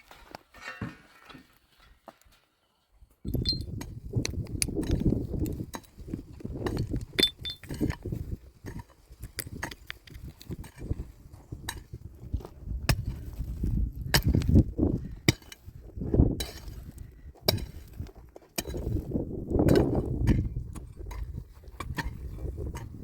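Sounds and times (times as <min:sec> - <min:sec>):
sharp clinks and knocks: 0:03.3 - 0:03.8, 0:07.1 - 0:07.9.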